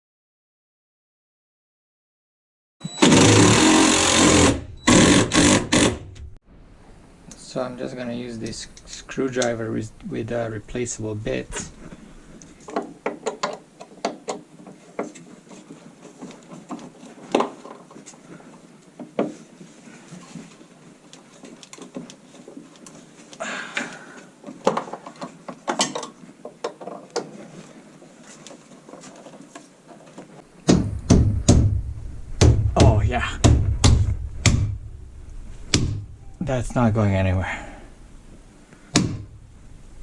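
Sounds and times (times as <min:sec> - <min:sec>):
screwdriver driving screws into wood: 0:03.0 - 0:06.0
thumps against wood: 0:30.7 - 0:34.8, 0:38.9 - 0:39.4.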